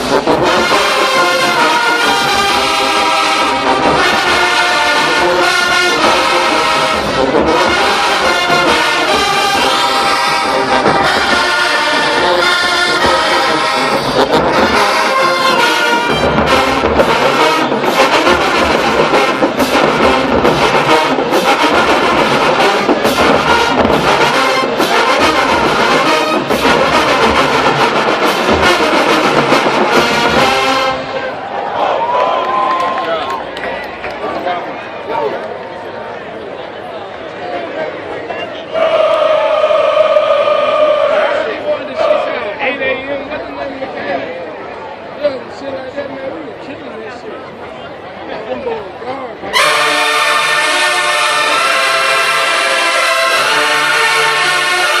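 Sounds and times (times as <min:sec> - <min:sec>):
brass section chords: 0:00.0 - 0:31.5, 0:38.7 - 0:42.6, 0:49.4 - 0:55.0
driving drum beat: 0:03.6 - 0:31.0.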